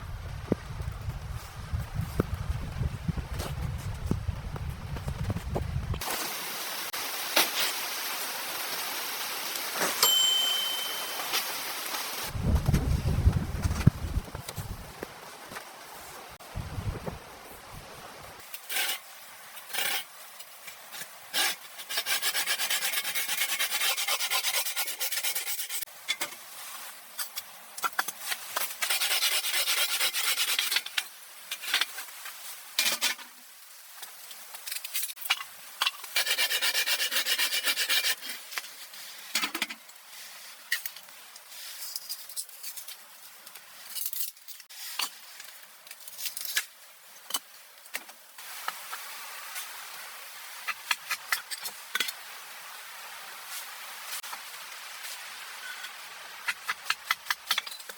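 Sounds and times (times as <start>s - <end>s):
rasping scraping strokes: 36.0s - 38.4s.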